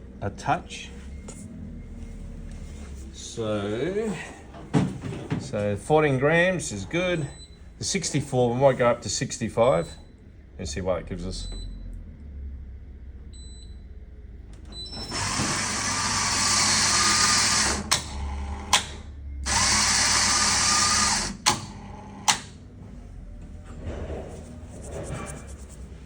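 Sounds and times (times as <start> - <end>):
coffee grinder motor running: 15.1 - 18.7, 19.4 - 22.3.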